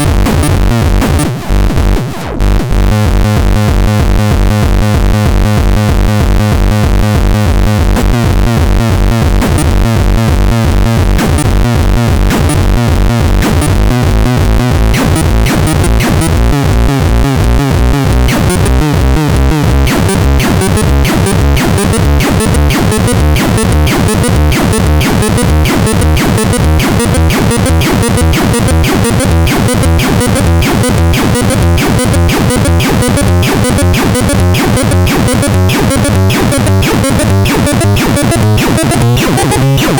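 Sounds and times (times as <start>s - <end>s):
pulsing synthesizer sequence: 14.9s - 16.6s, 18.2s - 39.9s.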